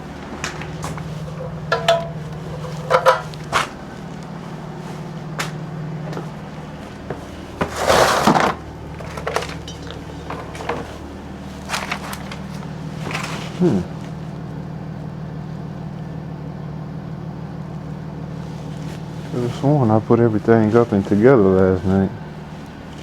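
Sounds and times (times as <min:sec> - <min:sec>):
steady low hum: 0:00.0 - 0:23.0
objects knocking and clicking: 0:00.3 - 0:03.8.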